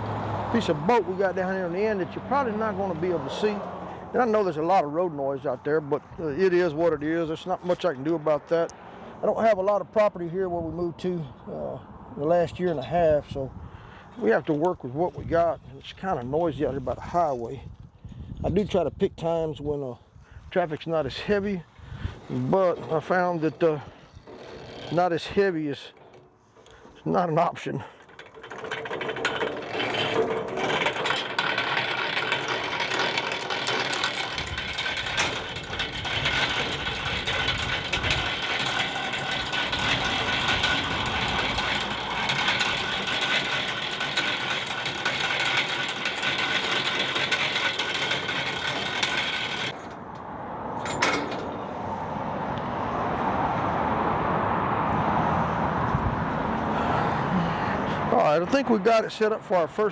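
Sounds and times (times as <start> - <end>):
geared motor whining: 28.0 - 49.8.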